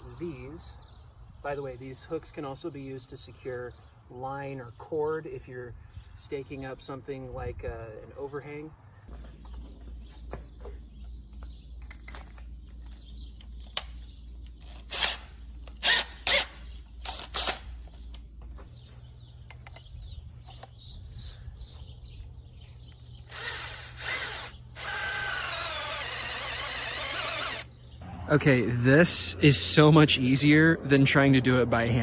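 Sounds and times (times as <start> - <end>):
power drill whining: 23.2 - 27.7.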